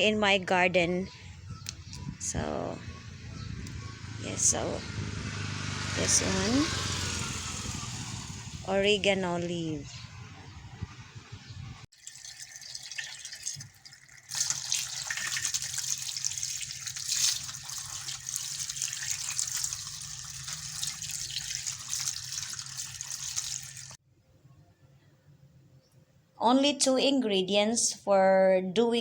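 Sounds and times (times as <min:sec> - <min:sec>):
water running from a tap: 0:11.9 - 0:24.0.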